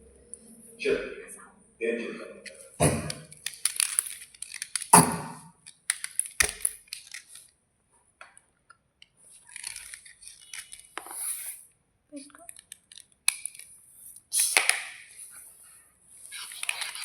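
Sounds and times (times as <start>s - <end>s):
slate crunching and cracking: 3.0s - 7.4s.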